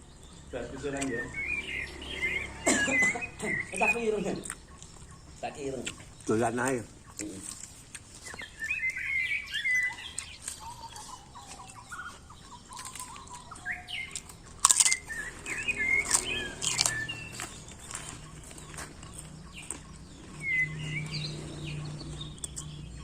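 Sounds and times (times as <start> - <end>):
small birds chirping: 0.0 - 23.0
sharp clicks or crunches: 12.7 - 20.3.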